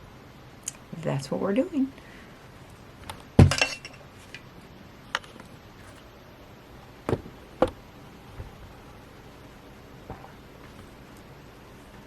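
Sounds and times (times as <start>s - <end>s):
hard objects clinking and knocking: 3.4s - 4.0s.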